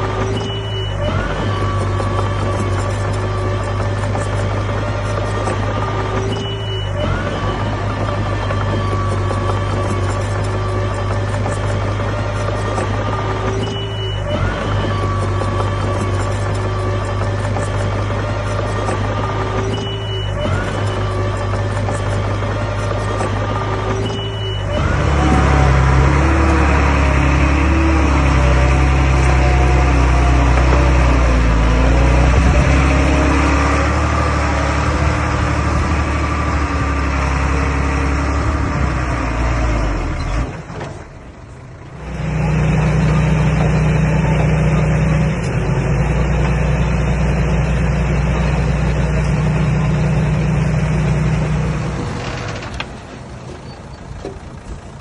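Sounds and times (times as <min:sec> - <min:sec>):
bulldozer diesel engine running: 0:00.0 - 0:55.0.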